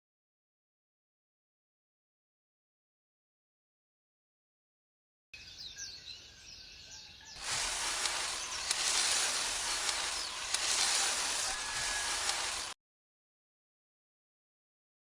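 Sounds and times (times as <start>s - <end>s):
faint bird chirps: 5.4s - 12.7s
loud steady hiss: 7.4s - 12.8s
small clicks: 7.4s - 12.8s.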